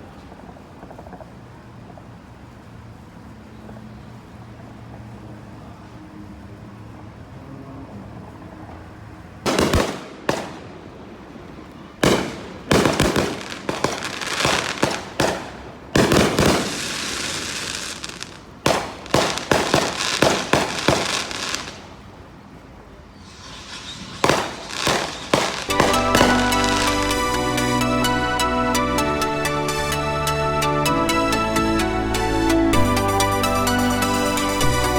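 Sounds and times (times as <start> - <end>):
fireworks bangs: 9.4 - 22.0, 23.2 - 29.2
fireworks crackling: 9.4 - 22.3, 23.1 - 34.9
music: 25.7 - 34.9.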